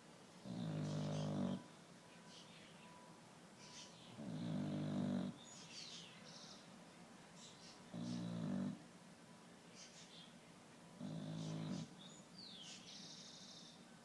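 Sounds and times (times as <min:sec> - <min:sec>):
dog snoring: 0:00.4 - 0:01.7, 0:04.2 - 0:05.4, 0:07.9 - 0:08.8, 0:11.0 - 0:11.9.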